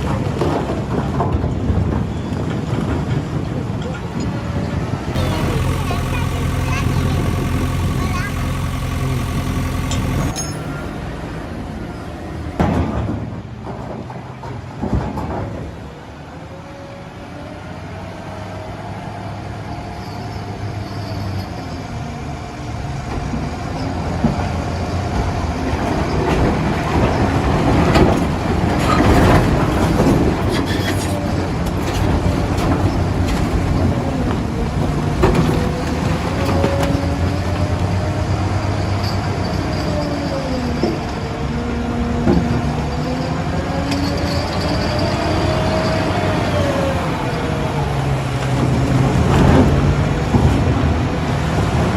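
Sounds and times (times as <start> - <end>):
diesel engine under load: 0.0 - 51.9
hydraulic whine: 5.1 - 11.0.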